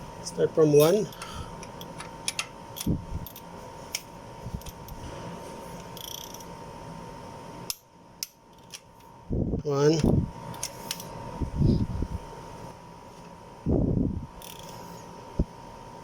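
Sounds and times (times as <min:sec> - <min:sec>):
metallic clicks of wrench: 0:06.0 - 0:06.5, 0:14.4 - 0:14.8.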